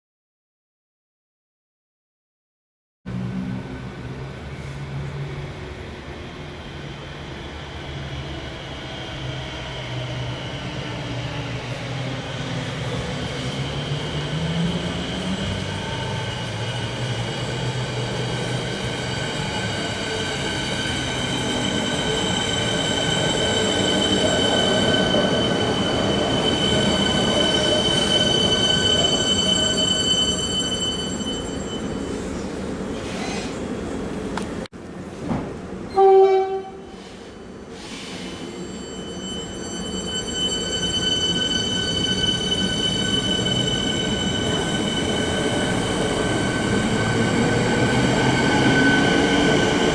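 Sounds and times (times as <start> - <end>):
electric train running hum: 3.1 - 37.8, 38.6 - 49.9
high multi-tone train whine: 3.1 - 49.9.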